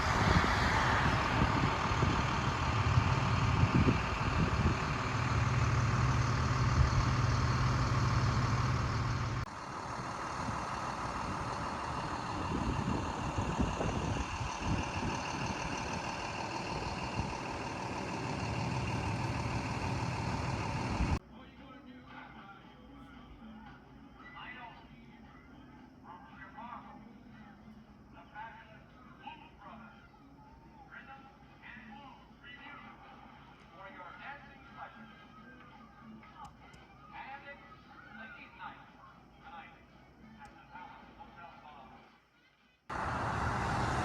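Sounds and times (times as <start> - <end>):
road noise: 0.0 - 21.2, 42.9 - 44.0
vehicle engine hum: 0.0 - 21.2, 42.9 - 44.0.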